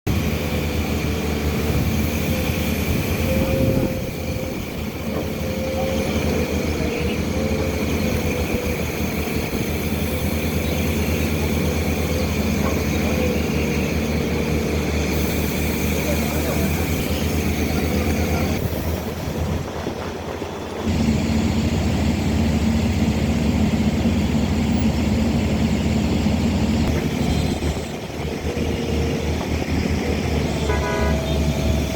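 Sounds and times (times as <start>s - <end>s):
excavator diesel engine running: 0.1s - 31.9s.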